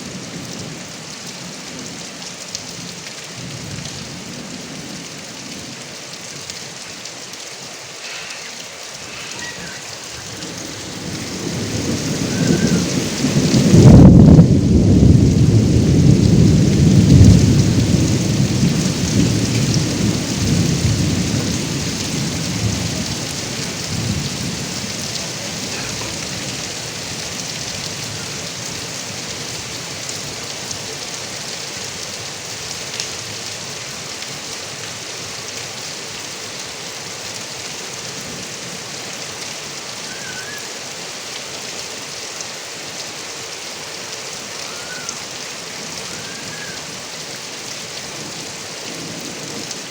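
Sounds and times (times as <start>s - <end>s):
heavy rain from gutter spout: 0.0s - 49.9s
low thunder rumble: 9.3s - 29.5s.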